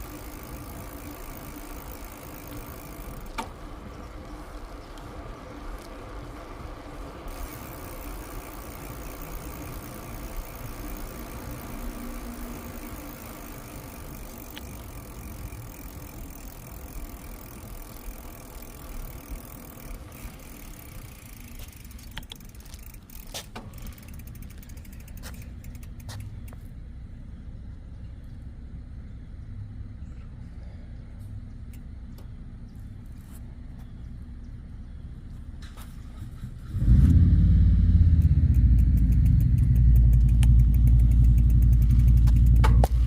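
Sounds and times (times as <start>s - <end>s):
bicycle tyres rumbling: 0.0s - 43.0s
sharp clicks: 14.3s - 15.4s, 38.2s - 43.0s.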